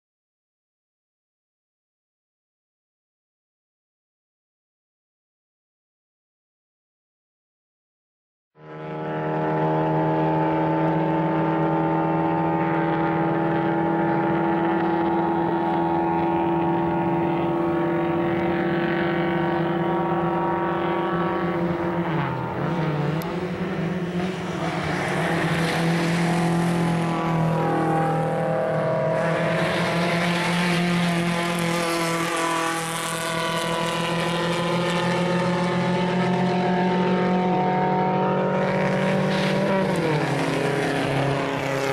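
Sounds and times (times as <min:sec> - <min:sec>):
car engine running: 0:08.6 - 0:41.9
road and wind noise: 0:08.6 - 0:41.9.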